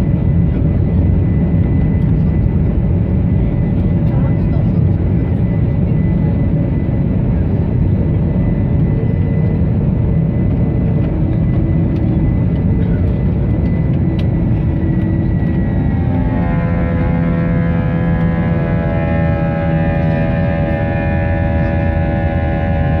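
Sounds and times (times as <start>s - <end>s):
high engine whine: 0.0s - 23.0s
jet engine rumble in cabin: 0.0s - 23.0s
droning multi-pitch hum: 11.5s - 23.0s.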